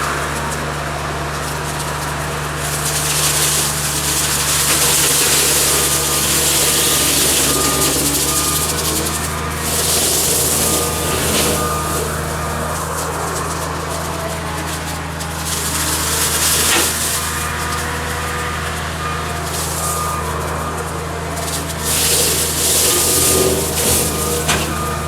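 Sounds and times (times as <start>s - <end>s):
diesel engine running under load: 0.0s - 25.0s
hissing rush of brush cutting: 2.4s - 20.5s, 21.3s - 25.0s.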